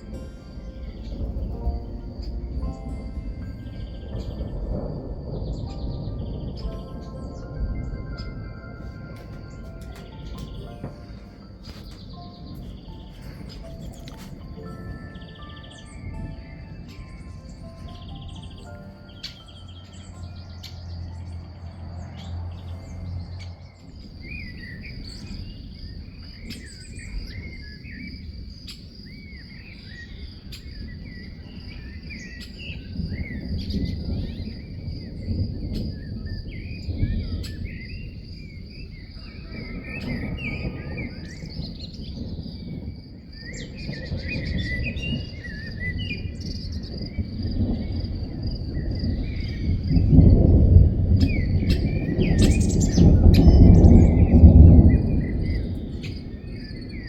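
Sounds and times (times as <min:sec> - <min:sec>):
low rumble: 0:00.0 - 0:26.4
birds chirping: 0:00.0 - 0:57.0.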